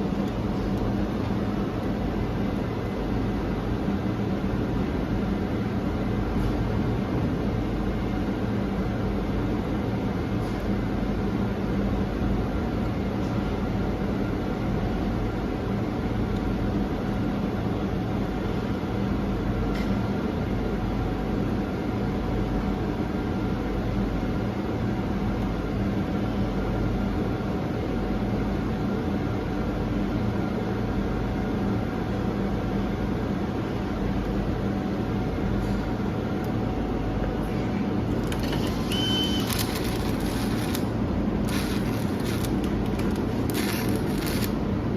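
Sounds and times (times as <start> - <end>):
welder humming and crackling: 38.1 - 44.6
brief high whistle: 38.7 - 39.5.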